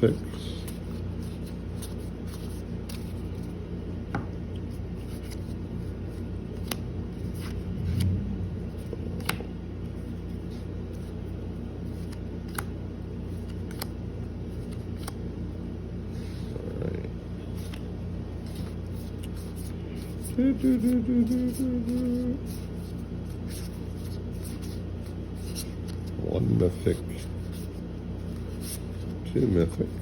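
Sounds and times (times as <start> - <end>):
steady low hum: 0.0 - 30.0
cards clicking and flicking: 6.4 - 8.2, 8.8 - 9.5, 11.8 - 12.8, 13.4 - 14.0, 14.6 - 15.3.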